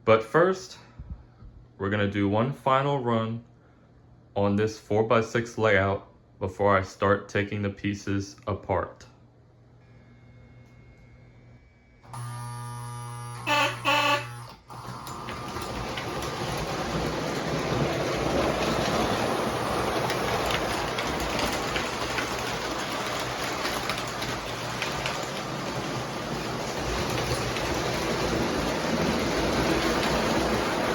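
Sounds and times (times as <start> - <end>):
steady electrical hum: 0.0 - 30.9
model train signal blasts: 12.1 - 14.7
clicks over rail joints: 15.0 - 30.9
model train rumbling on track: 15.1 - 30.9.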